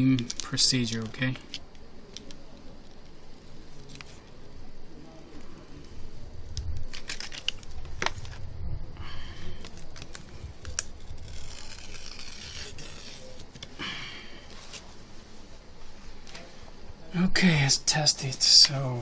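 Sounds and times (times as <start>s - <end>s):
film tearing: 6.8s - 7.7s, 9.8s - 13.7s
blade scraping plastic film: 9.7s - 13.7s.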